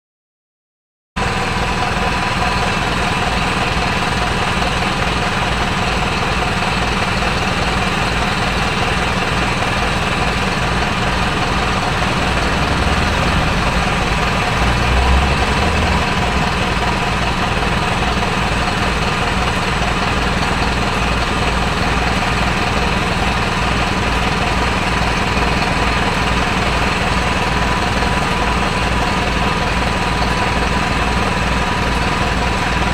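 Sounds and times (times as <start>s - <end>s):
diesel bus engine idling: 1.2s - 32.9s
engine whine: 9.2s - 20.3s.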